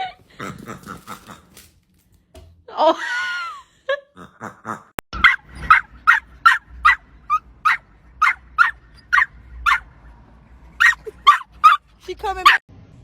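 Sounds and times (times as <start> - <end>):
dog barking: 5.2 - 9.9, 10.8 - 11.8, 12.4 - 12.6.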